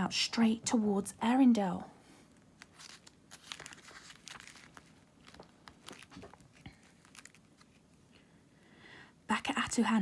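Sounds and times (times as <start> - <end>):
paper rustling and crinkling: 2.3 - 8.0.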